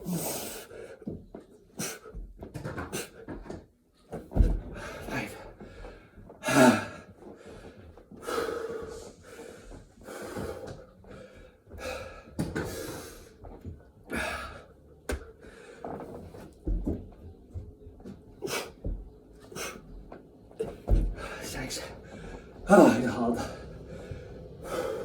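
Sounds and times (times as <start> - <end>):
man breathing hard and gasping: 4.4 - 13.5, 14.1 - 14.7, 18.4 - 19.9, 20.6 - 25.0.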